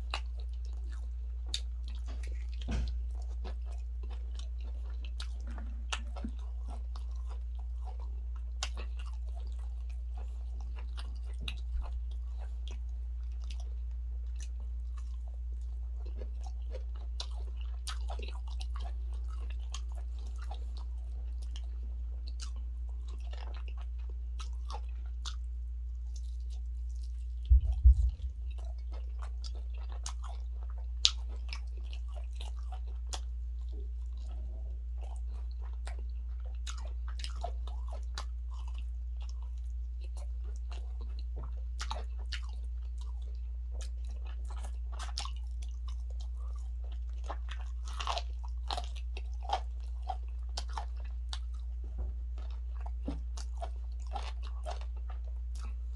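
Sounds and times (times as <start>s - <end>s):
person chewing food: 0.0s - 55.9s
steady low hum: 0.0s - 55.9s
dull low knock: 27.5s - 28.5s.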